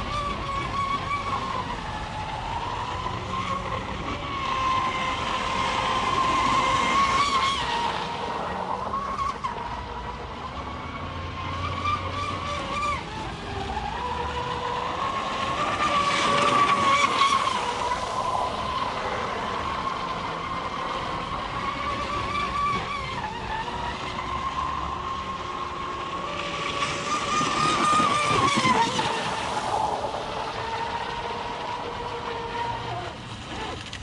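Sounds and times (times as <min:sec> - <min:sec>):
electric motor whine: 0:00.0 - 0:34.0
rushing hiss of passing boat: 0:09.6 - 0:34.0.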